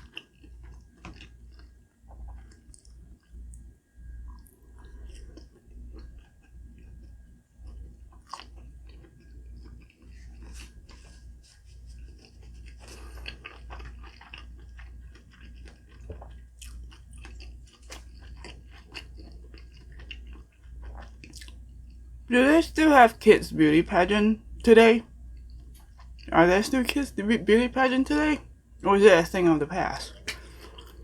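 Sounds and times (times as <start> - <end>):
chewing and biting food: 0.0 - 3.7, 4.3 - 22.1, 25.4 - 26.3, 30.1 - 31.0
steady low hum: 0.0 - 31.0.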